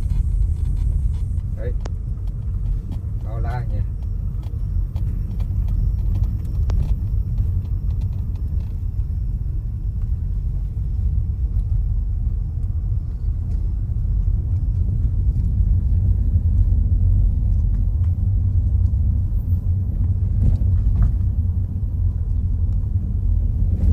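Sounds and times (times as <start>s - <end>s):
road vehicle rumble: 0.0s - 23.9s.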